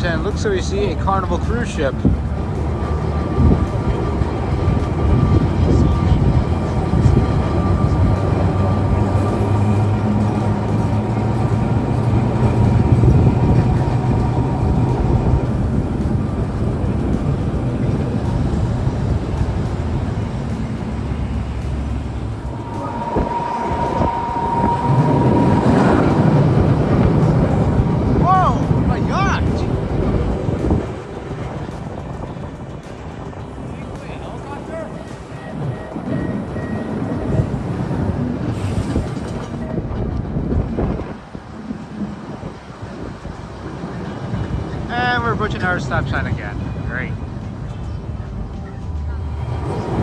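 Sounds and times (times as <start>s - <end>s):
tram wheels and motors rumbling: 0.0s - 50.0s
steady high whine: 0.3s - 38.3s.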